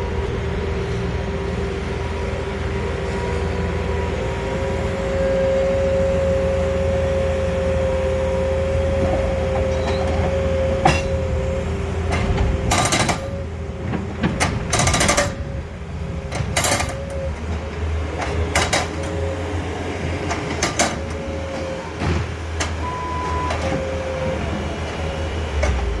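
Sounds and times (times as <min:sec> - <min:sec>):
skid-steer engine whining: 0:00.0 - 0:26.0.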